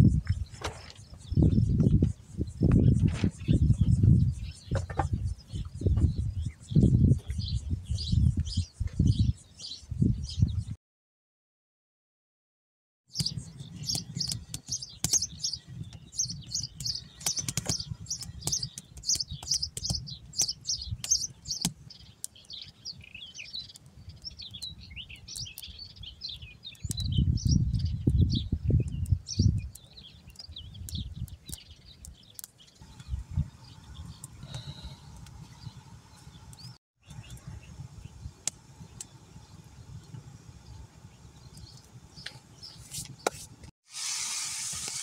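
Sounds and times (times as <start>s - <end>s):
small birds chirping: 0.0s - 10.8s, 13.1s - 43.6s.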